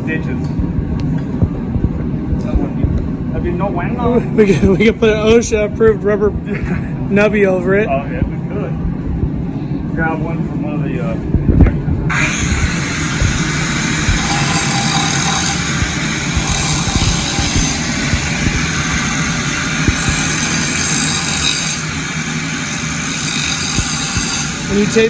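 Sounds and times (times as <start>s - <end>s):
angle grinder grinding steel: 12.1s - 25.0s.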